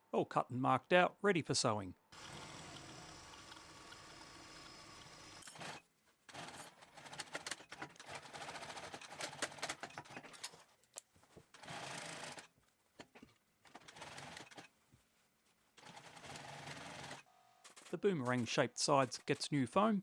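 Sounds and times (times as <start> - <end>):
sewing machine stitching: 2.2 - 10.7, 11.5 - 14.7, 15.8 - 19.5.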